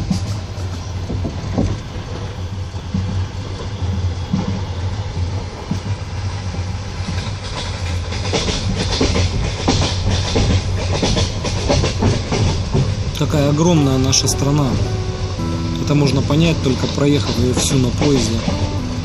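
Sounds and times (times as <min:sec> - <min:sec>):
train carriage rumbling: 0:00.0 - 0:19.0
wheel clacks over rail joints: 0:07.0 - 0:14.3, 0:16.6 - 0:19.0.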